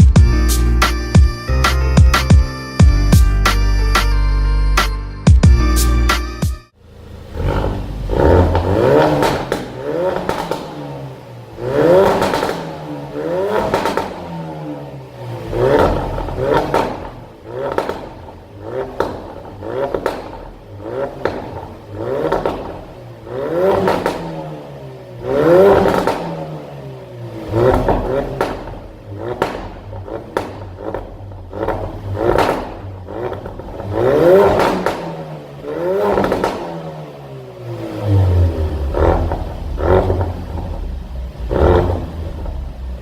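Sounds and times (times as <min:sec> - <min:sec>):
car engine revving: 0:06.8 - 0:43.0
exhaust crackles and pops: 0:07.3 - 0:14.5, 0:15.3 - 0:24.5, 0:25.6 - 0:26.5, 0:27.4 - 0:43.0.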